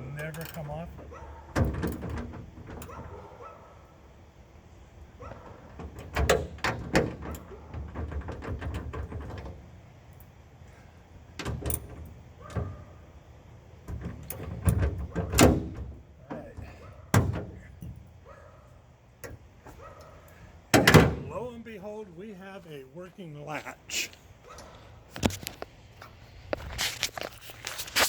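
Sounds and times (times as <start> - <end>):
metal clunks and knocks: 0.0 - 3.2, 5.2 - 9.8, 11.3 - 13.1, 13.8 - 18.2, 20.7 - 21.4.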